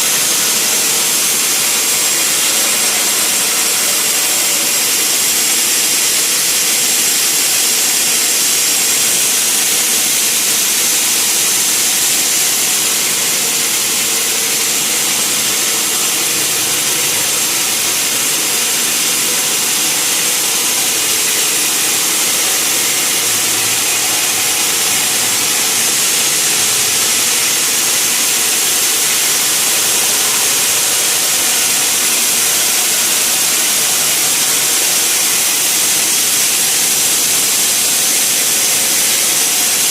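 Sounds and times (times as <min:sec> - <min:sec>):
sawmill machinery hissing: 0:00.0 - 0:39.9.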